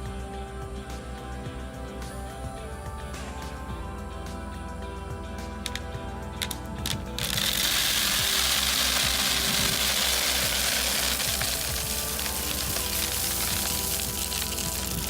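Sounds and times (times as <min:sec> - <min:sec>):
background music: 0:00.0 - 0:15.0
loud steady hiss: 0:07.0 - 0:15.0.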